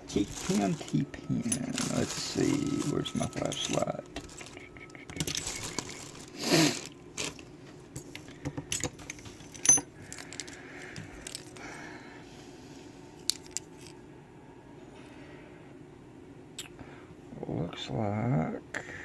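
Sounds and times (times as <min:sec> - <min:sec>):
metal tools clinking: 0:00.2 - 0:06.3, 0:08.0 - 0:11.6.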